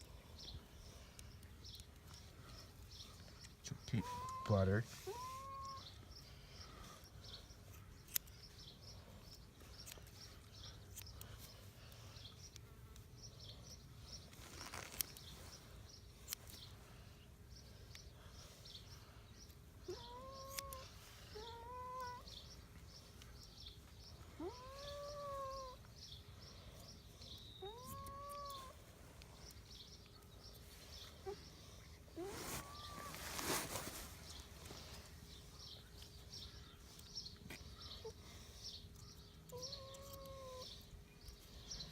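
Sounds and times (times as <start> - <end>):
cat meowing: 27.6 - 28.7.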